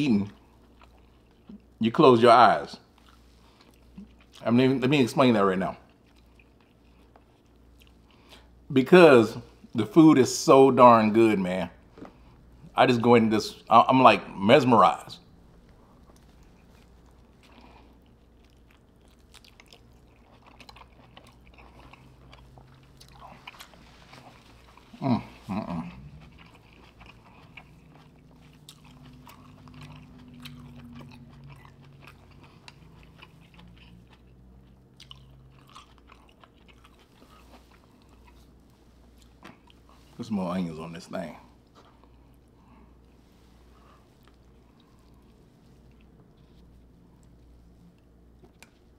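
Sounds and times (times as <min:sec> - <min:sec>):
chewing and mouth smacking: 0:00.2 - 0:01.8, 0:02.6 - 0:04.6, 0:05.7 - 0:08.6, 0:15.5 - 0:40.2, 0:41.4 - 0:48.9.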